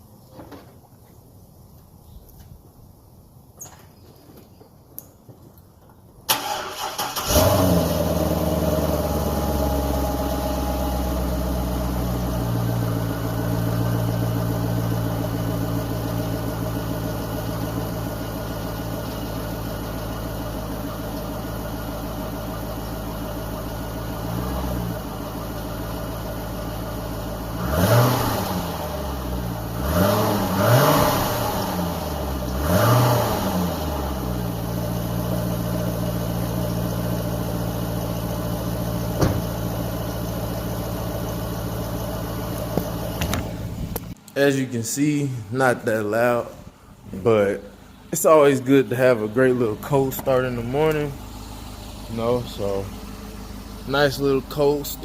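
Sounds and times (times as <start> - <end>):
car engine idling: 6.2 - 55.0
car engine revving: 6.3 - 20.8, 21.4 - 44.2.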